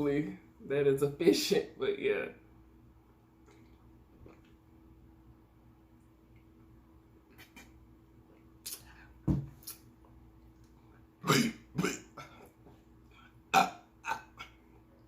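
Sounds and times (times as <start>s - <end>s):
person burping: 11.2s - 12.5s, 13.5s - 14.6s.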